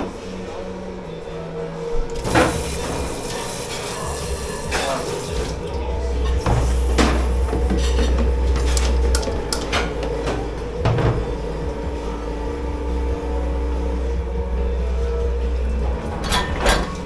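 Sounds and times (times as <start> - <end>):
dishes and cutlery clattering: 2.1 - 11.5, 16.1 - 17.0
water running in a sink: 2.1 - 12.8.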